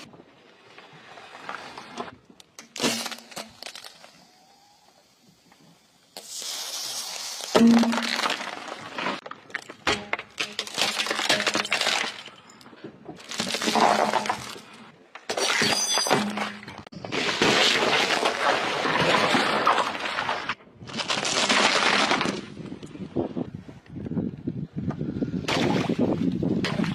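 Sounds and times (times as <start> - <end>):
tyres crushing brittle objects: 2.6 - 4.2, 7.4 - 22.6.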